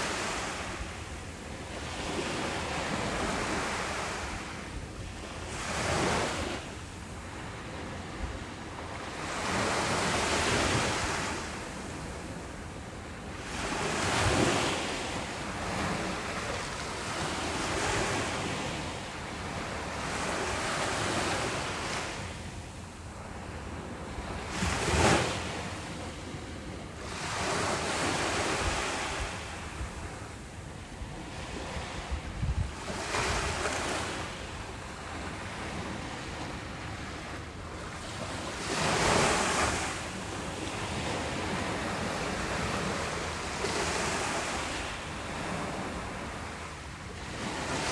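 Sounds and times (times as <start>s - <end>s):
ocean waves breaking: 0.0s - 47.9s
wind buffeting microphone: 30.9s - 34.7s.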